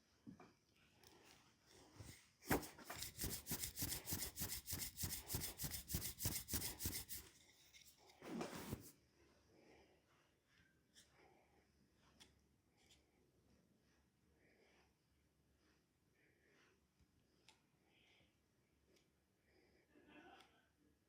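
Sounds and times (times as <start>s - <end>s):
hands rubbing skin: 2.5s - 7.3s.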